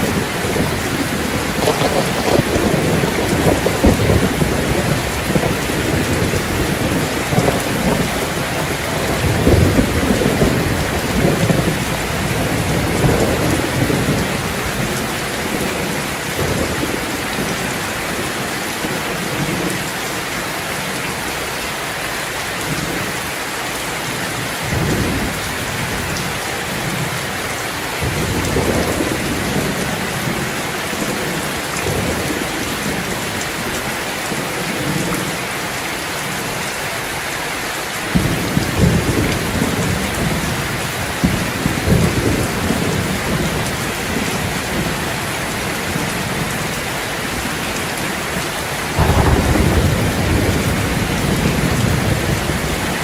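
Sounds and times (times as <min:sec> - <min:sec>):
thunder rumbling: 0:00.0 - 0:19.8, 0:28.0 - 0:35.5, 0:38.1 - 0:53.0
heavy rain falling: 0:00.0 - 0:53.0.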